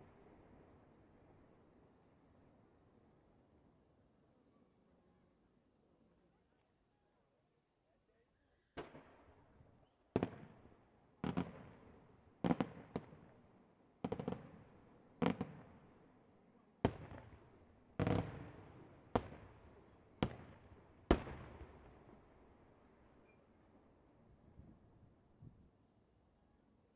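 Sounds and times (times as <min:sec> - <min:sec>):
fireworks bangs: 0:11.2 - 0:11.8.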